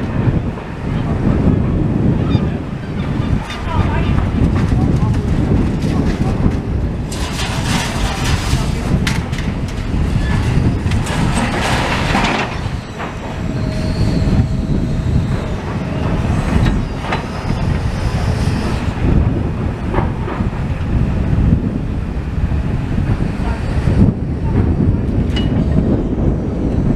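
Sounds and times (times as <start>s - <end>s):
demolition machinery rumbling: 0.0s - 26.9s
high squeals: 9.9s - 19.0s.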